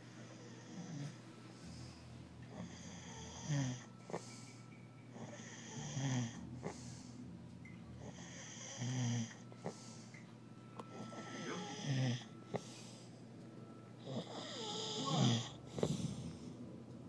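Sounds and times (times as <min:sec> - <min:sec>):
person snoring: 0:02.5 - 0:04.3, 0:05.1 - 0:07.1, 0:08.0 - 0:10.0, 0:10.9 - 0:12.7, 0:14.0 - 0:16.6.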